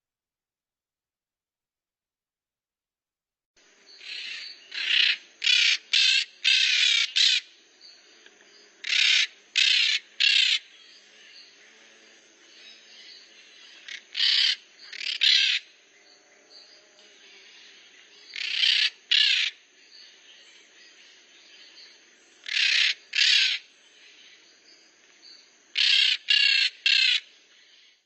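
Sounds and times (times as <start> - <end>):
parrots screeching: 8.8 - 10.6, 13.9 - 15.6, 22.5 - 23.6, 25.8 - 27.2.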